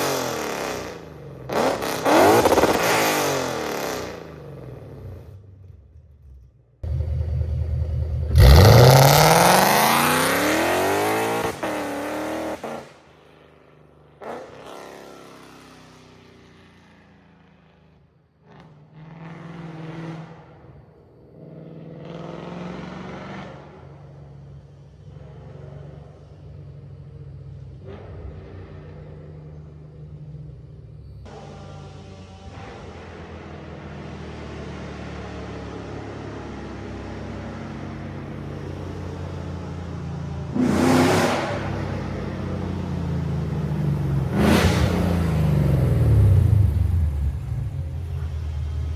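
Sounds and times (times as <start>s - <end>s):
car engine revving: 0.0s - 5.4s, 6.2s - 13.0s, 40.3s - 48.9s.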